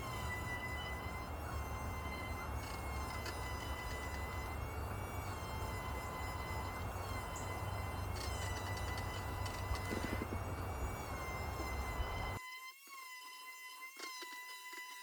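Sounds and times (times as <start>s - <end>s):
hiss and rumble: 0.0s - 12.4s
power sander whine: 0.0s - 15.0s.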